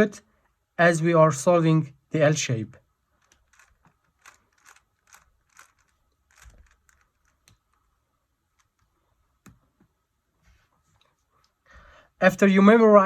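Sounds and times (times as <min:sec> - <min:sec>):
puzzle cube plastic clicks: 0:03.1 - 0:09.6.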